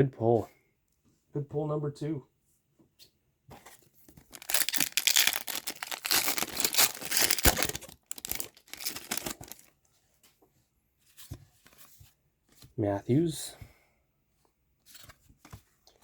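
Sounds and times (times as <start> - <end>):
wrapper tearing and crinkling: 4.2 - 9.7.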